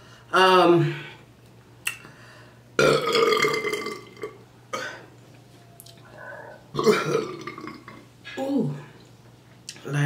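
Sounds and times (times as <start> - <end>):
woman burping: 2.8 - 5.0, 6.7 - 8.0.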